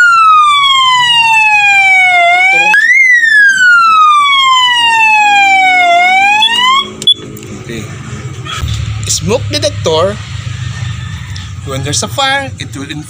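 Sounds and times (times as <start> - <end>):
fire alarm siren wailing: 0.0 - 7.3.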